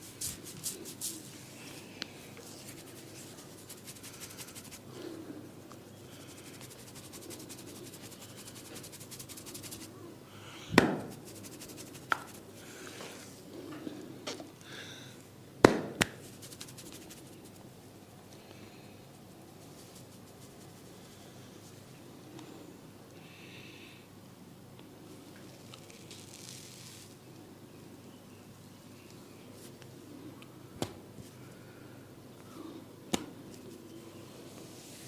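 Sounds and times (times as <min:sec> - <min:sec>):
rubbing and scratching on scalp: 0:00.0 - 0:01.8, 0:02.4 - 0:05.2, 0:05.9 - 0:10.0, 0:11.0 - 0:12.6, 0:16.1 - 0:17.7, 0:19.0 - 0:21.8, 0:25.8 - 0:27.2
sharp smacks: 0:10.7 - 0:11.1, 0:15.6 - 0:16.2, 0:33.1 - 0:33.3.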